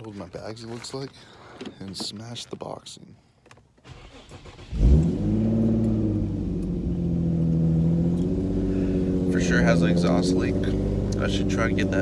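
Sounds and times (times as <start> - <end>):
car engine starting and idling: 3.8 - 12.0.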